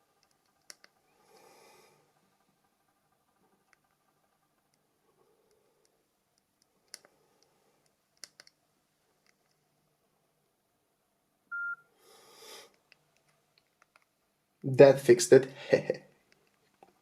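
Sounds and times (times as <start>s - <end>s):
short electronic beep: 11.5s - 11.8s.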